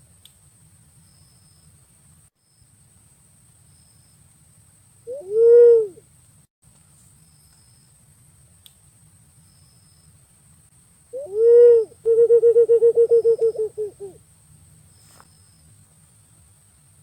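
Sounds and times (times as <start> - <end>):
pigeon whistled calls: 11.2 - 14.1.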